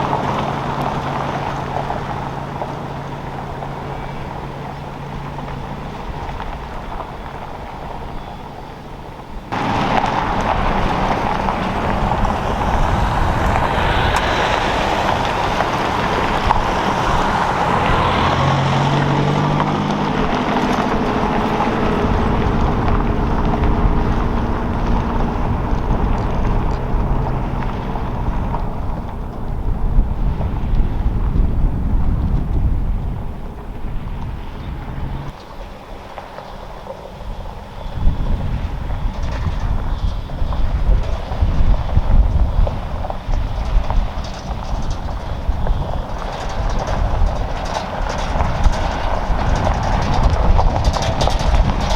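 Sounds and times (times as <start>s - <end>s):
vehicle engine running: 0.0s - 8.4s, 9.0s - 35.3s, 38.5s - 51.9s
road and wind noise: 0.0s - 51.9s.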